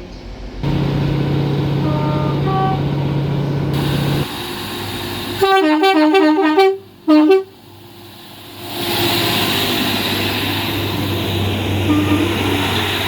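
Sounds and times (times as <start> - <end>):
two-tone train horn blasts: 0.6 - 4.2, 5.3 - 7.6, 11.8 - 12.9.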